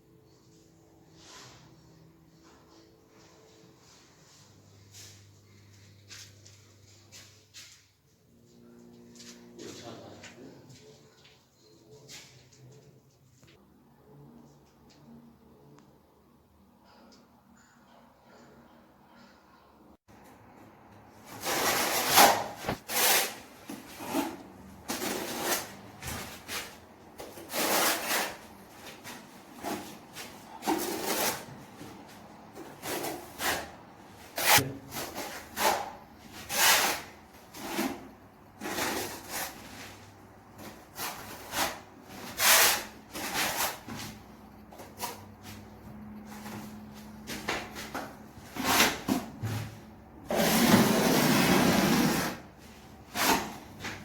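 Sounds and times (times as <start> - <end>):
hand tool scraping: 21.3 - 32.0, 32.6 - 46.7.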